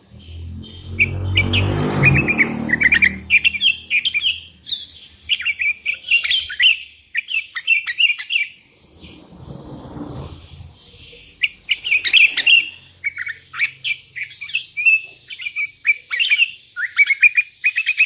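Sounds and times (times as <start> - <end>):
low hum: 0.0 - 3.9, 8.8 - 12.9.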